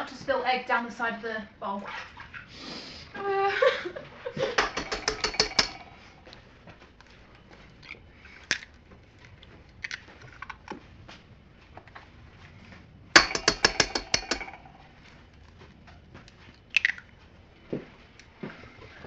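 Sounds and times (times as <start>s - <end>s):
eggs cracking into a bowl: 7.8s - 8.8s, 9.7s - 10.8s, 13.2s - 14.6s, 16.6s - 17.1s.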